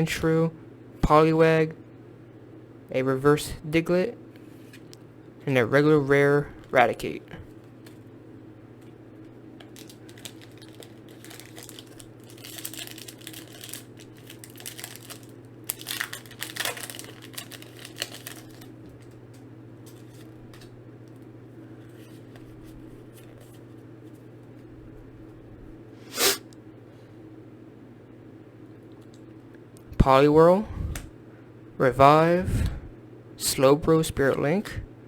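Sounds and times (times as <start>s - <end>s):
steady low hum: 0.0s - 35.0s
foil wrapper tearing and crinkling: 9.6s - 18.8s.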